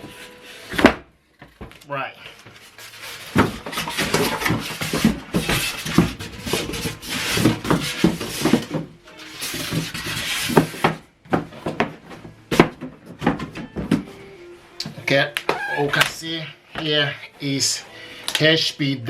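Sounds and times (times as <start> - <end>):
packaging rustling and scraping: 0.0 - 14.3.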